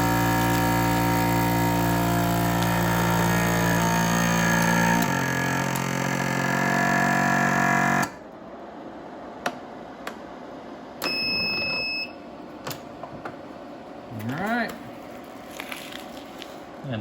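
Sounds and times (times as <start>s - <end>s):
vacuum sealer pump humming: 0.0s - 8.4s
steady beep: 11.0s - 12.2s.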